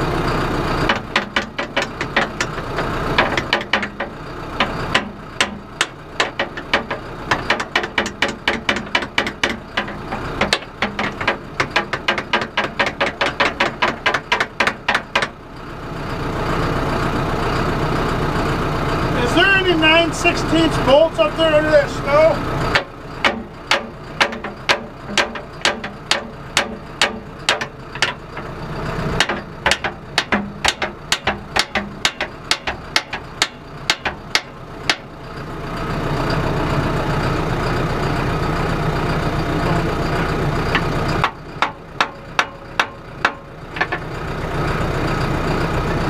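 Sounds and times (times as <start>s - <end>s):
engine idling: 0.0s - 46.0s
hammer strikes on metal: 0.9s - 15.4s, 22.7s - 28.5s, 29.2s - 35.1s, 41.2s - 44.1s.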